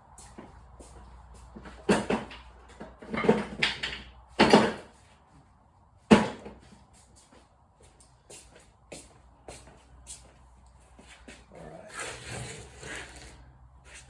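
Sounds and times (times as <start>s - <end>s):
objects clunking on workbench: 1.7s - 4.9s
scraping and rustling: 11.0s - 14.0s.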